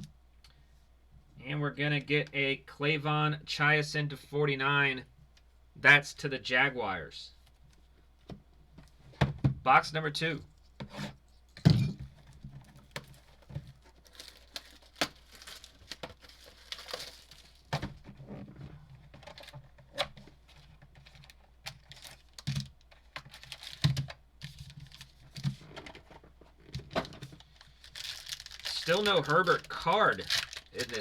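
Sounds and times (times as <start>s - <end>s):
plastic wrap tearing and crinkling: 12.8s - 17.7s, 20.5s - 25.8s, 26.6s - 31.0s.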